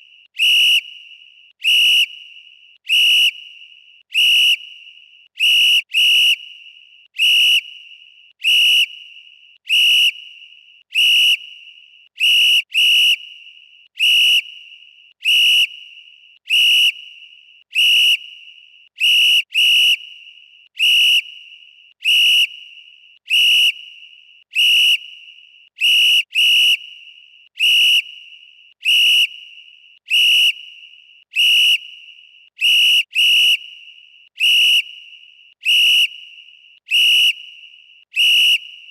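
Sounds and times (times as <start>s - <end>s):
referee whistle blasts: 0.4s - 3.6s, 4.2s - 4.8s, 24.6s - 38.9s.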